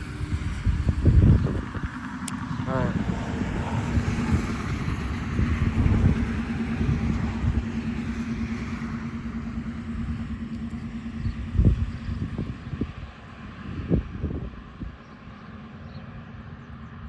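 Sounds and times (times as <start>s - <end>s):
vehicle engine hum: 0.0s - 17.0s.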